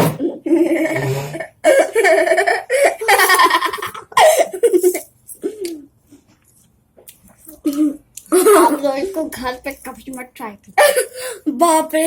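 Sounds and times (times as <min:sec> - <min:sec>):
girls laughing: 0:01.6 - 0:05.1.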